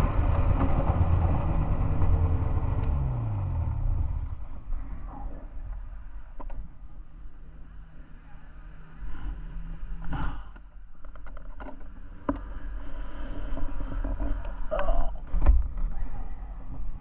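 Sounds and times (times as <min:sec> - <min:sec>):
snowmobile engine rumbling: 0:00.0 - 0:06.0.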